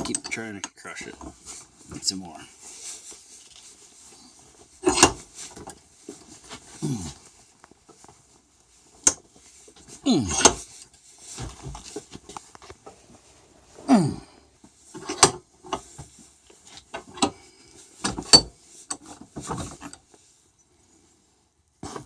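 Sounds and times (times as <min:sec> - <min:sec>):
metal creaking: 0:11.4 - 0:15.3.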